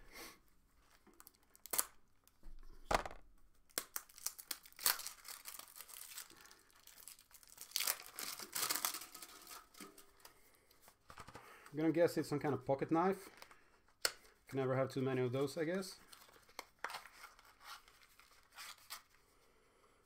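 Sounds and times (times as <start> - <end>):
wrapper tearing and crinkling: 1.2 - 2.0, 3.0 - 10.2
knife slitting packaging: 7.4 - 9.8.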